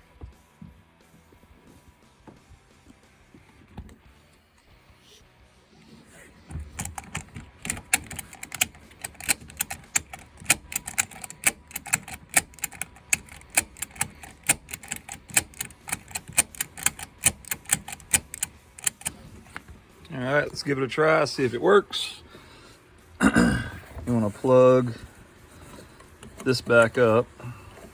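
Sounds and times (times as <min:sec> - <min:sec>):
seat belt buckle clicking: 0:06.6 - 0:19.7.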